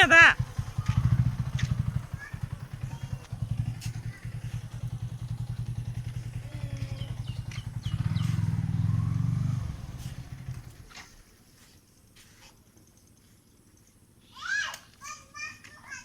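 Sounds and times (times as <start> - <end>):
small engine puttering: 0.0 - 11.3.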